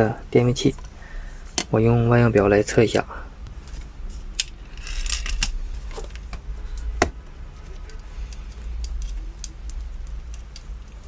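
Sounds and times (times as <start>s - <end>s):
low steady hum: 0.0s - 11.0s
multimeter probes clicking: 7.8s - 11.0s.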